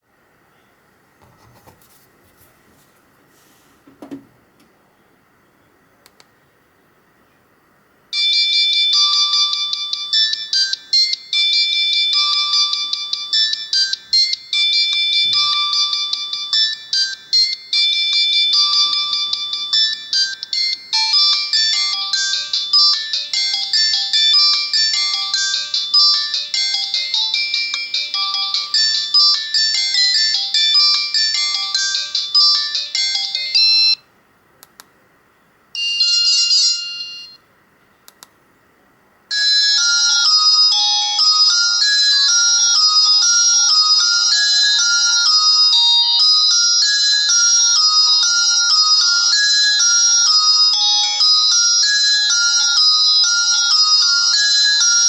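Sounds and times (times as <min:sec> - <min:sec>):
synthesized ringtone melody: 0:08.2 - 0:34.0, 0:35.8 - 0:37.4, 0:39.3 - 0:55.0.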